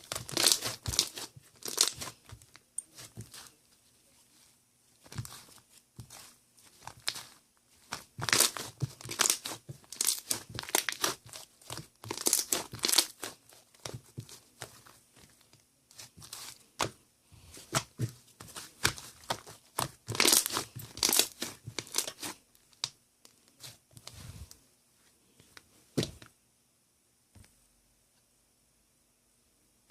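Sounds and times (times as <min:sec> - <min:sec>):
packaging crinkling and tearing: 0:00.0 - 0:02.2, 0:06.9 - 0:14.0, 0:18.8 - 0:22.8.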